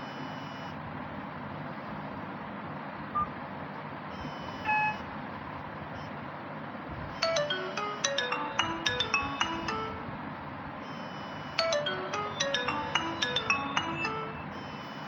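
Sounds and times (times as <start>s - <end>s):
phone beep: 7.2s - 10.0s, 10.9s - 15.0s
bell-like ringtone melody: 7.2s - 10.2s, 11.6s - 15.0s.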